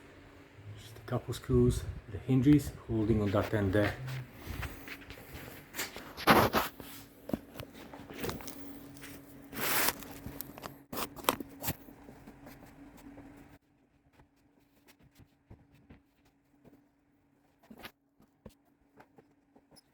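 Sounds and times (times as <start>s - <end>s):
faint steady hum: 0.0s - 19.8s
footsteps: 2.6s - 10.3s.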